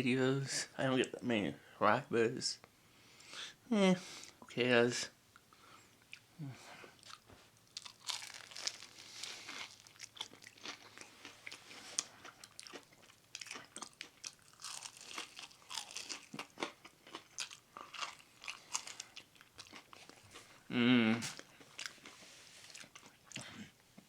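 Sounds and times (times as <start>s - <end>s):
person chewing and crunching: 6.9s - 23.8s.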